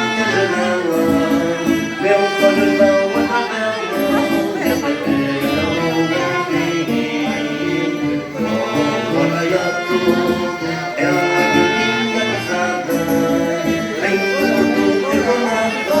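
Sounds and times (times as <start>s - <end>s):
live dance band playing: 1.7s - 5.0s.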